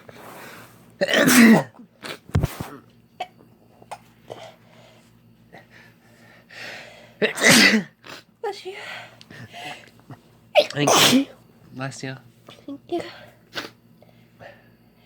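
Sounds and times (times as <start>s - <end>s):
person sneezing: 1.0s - 2.8s, 7.2s - 8.2s, 10.6s - 11.4s.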